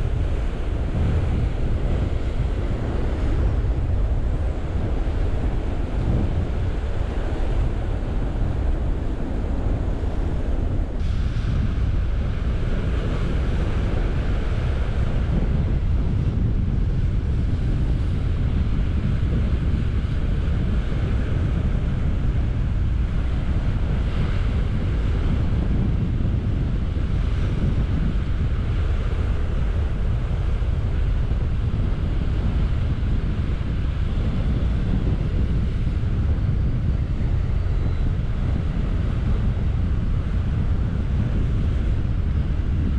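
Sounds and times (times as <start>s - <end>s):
wind buffeting microphone: 0.0s - 42.9s.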